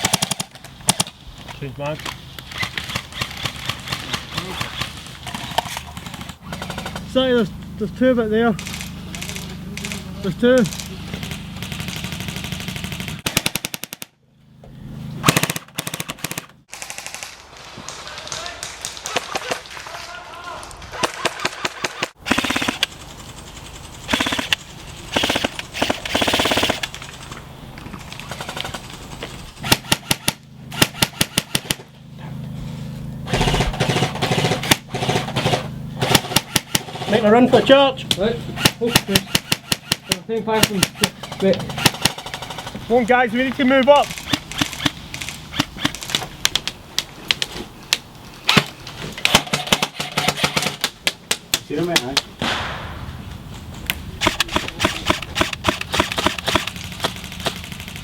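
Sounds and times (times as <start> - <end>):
airsoft rifles firing: 0.0 - 1.2, 2.5 - 7.1, 10.6 - 14.2, 15.2 - 19.7, 20.9 - 23.3, 24.1 - 27.3, 28.0 - 31.9, 33.3 - 37.4, 38.6 - 42.8, 43.9 - 46.4, 48.5 - 53.1, 54.2 - 58.0.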